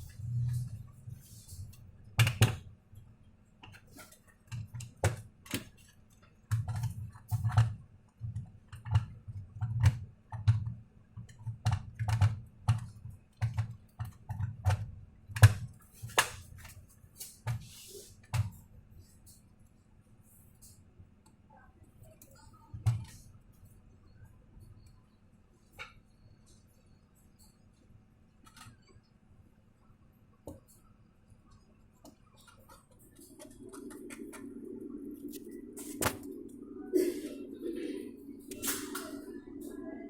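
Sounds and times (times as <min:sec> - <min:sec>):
clicks and taps on a laptop: 0:04.5 - 0:16.3.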